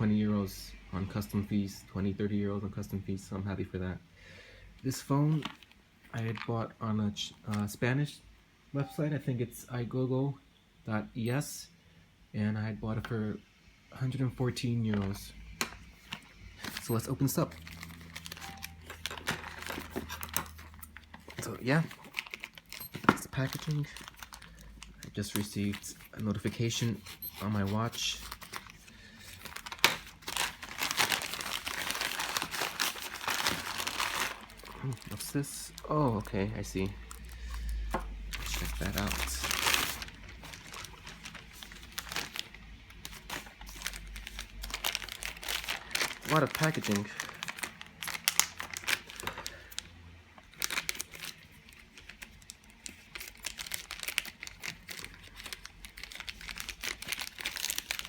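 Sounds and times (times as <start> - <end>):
packaging crinkling: 14.9 - 58.0.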